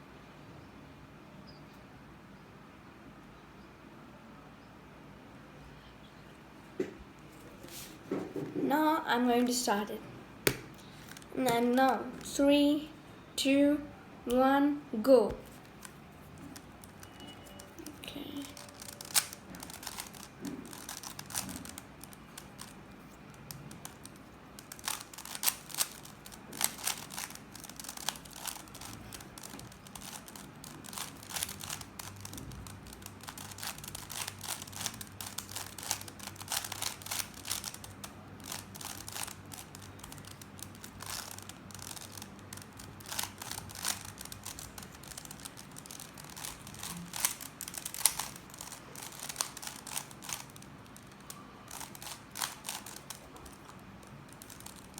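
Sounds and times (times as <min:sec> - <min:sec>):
puzzle cube layers clicking: 0:15.4 - 0:54.9.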